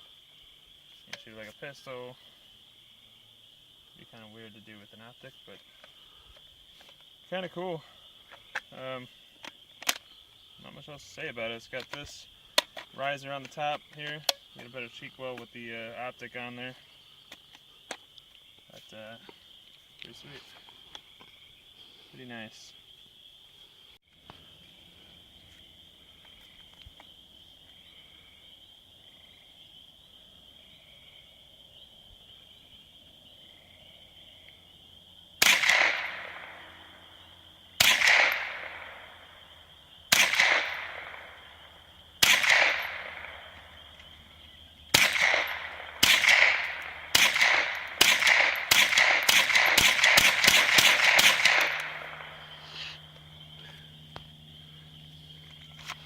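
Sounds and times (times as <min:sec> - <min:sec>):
rifle gunshots: 0:35.4 - 0:36.6, 0:37.8 - 0:39.1, 0:40.1 - 0:41.5, 0:42.2 - 0:43.5, 0:44.9 - 0:52.4.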